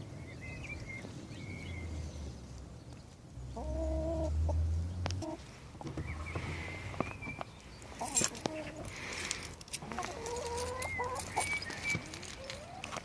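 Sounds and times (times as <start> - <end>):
hen calling: 9.8 - 12.8.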